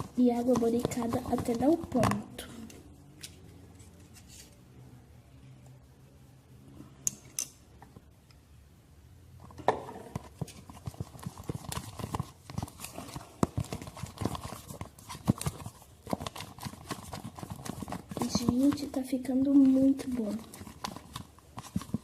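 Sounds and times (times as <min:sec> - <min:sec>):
spoon stirring slime: 0:00.0 - 0:02.8, 0:10.0 - 0:22.0.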